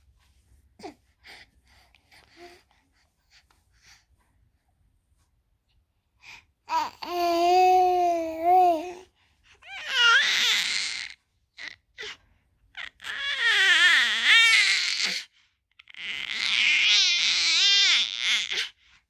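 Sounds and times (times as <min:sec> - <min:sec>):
baby crying and squealing: 0:09.8 - 0:11.0.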